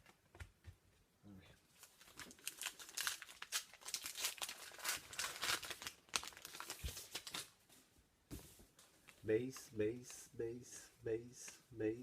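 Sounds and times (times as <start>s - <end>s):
wrapper crinkling and tearing: 1.8s - 7.5s.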